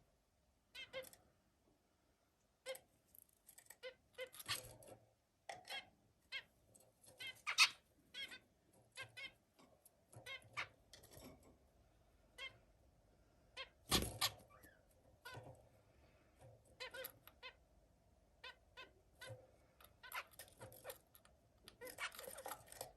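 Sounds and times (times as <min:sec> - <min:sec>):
zebra finch calling and singing: 0:07.1 - 0:09.4, 0:10.2 - 0:11.2, 0:16.8 - 0:17.6, 0:18.4 - 0:22.8.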